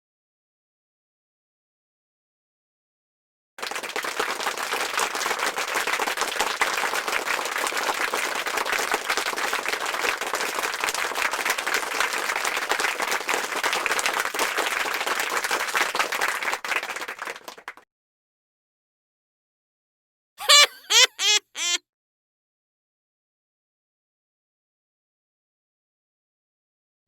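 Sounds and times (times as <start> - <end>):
crowd clapping: 3.6 - 17.8, 20.4 - 21.8.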